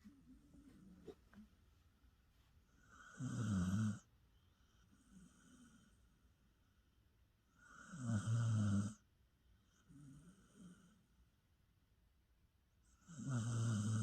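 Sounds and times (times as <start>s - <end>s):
dog snoring: 2.8s - 4.1s, 7.5s - 9.0s, 9.7s - 11.0s, 12.9s - 14.0s.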